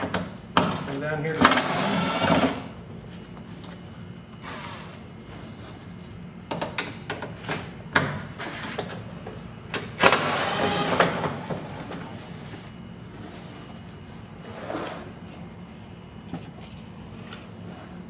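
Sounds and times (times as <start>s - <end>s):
cordless power driver running: 1.5s - 2.6s, 10.1s - 11.2s.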